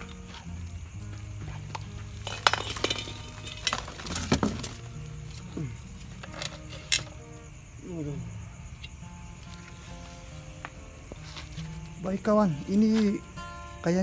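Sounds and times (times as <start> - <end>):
background music: 0.0 - 14.0
hard objects clinking: 1.6 - 7.3.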